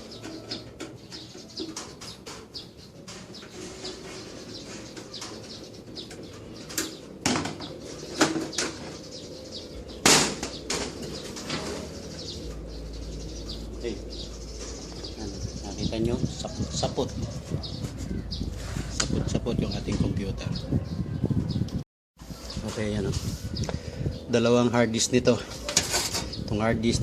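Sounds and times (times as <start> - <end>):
loud sharp knocks: 10.0 - 11.0.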